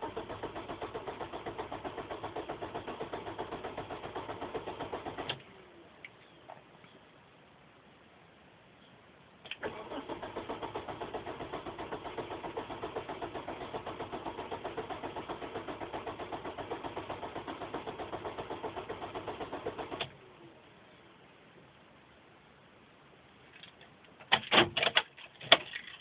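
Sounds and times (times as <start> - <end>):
car starter cranking engine: 0.0 - 5.4, 9.5 - 20.3.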